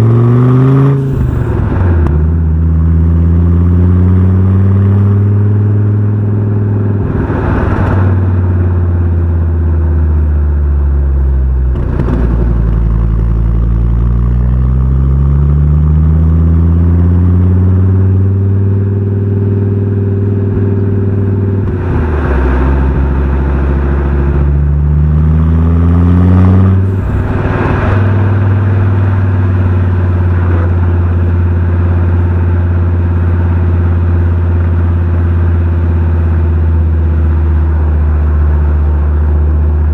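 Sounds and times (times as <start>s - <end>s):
car engine revving: 0.0s - 39.9s
short rushes of noise: 26.8s - 31.0s.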